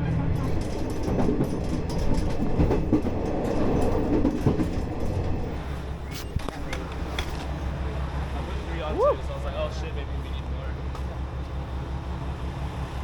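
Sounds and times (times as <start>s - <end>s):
rattling and clicks: 0.0s - 7.6s
vehicle hum and rumble: 0.0s - 13.0s.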